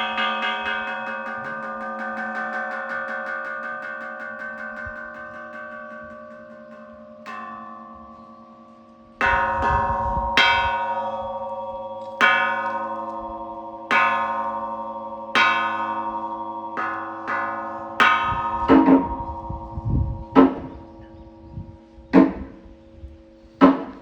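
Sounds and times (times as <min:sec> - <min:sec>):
metal temple bell ringing: 0:00.0 - 0:24.0.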